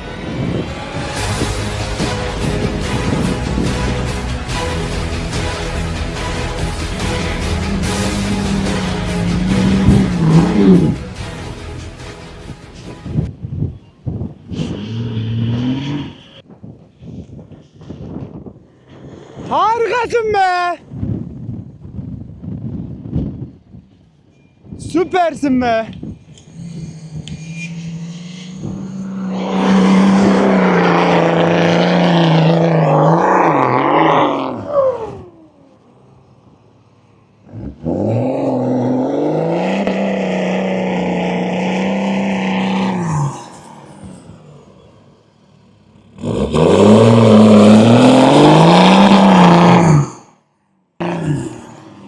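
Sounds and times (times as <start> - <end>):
off-road engine revving hard: 0.0 - 13.2, 14.5 - 16.4, 26.3 - 36.3, 37.4 - 50.2.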